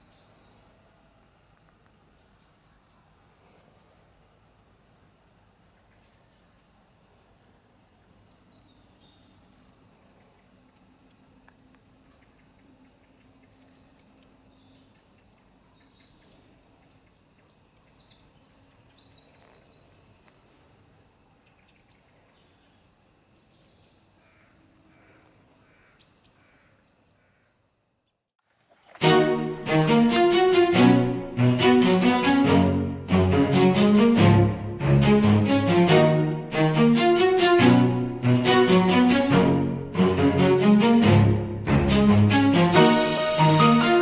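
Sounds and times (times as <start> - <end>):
small birds chirping: 0.0 - 0.9, 2.1 - 4.8, 5.6 - 27.5
faint outdoor background noise: 0.0 - 40.1.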